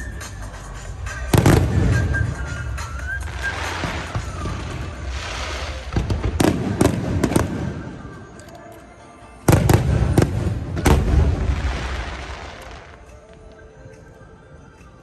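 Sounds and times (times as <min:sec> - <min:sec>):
fireworks bursting: 0:01.0 - 0:08.4, 0:09.5 - 0:13.5.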